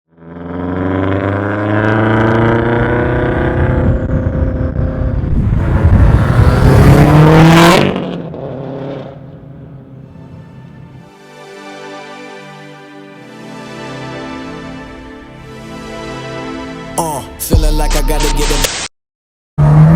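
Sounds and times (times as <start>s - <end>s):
car engine accelerating: 0.1s - 11.1s, 19.6s - 19.9s.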